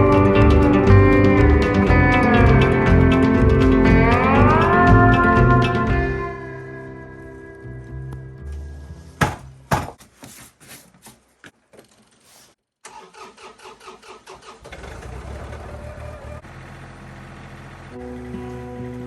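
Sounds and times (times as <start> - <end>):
engine cranking and idling: 0.0 - 6.2, 12.8 - 19.0
sharp knocks: 9.2 - 10.0.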